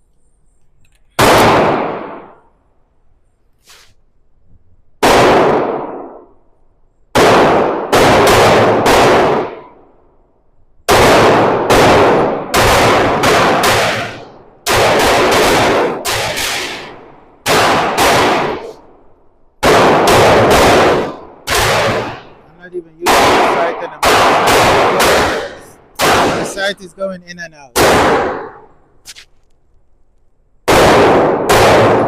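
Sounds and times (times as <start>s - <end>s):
pistol shots with echo: 1.2s - 2.4s, 5.0s - 6.3s, 7.1s - 9.8s, 10.9s - 19.0s, 19.6s - 28.8s, 30.7s - 32.0s.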